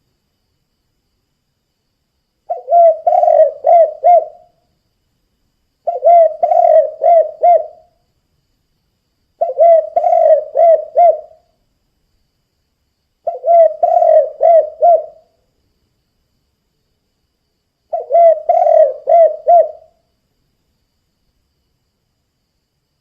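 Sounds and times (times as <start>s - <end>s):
dove cooing: 2.5s - 4.6s, 5.9s - 7.9s, 9.4s - 11.4s, 13.2s - 15.3s, 17.9s - 19.9s.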